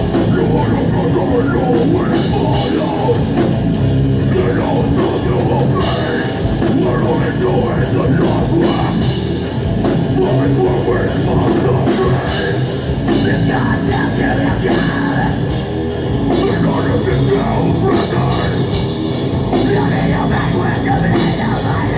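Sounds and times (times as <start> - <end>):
drum kit: 0.0 - 21.9
heavy metal band playing live: 0.0 - 21.9.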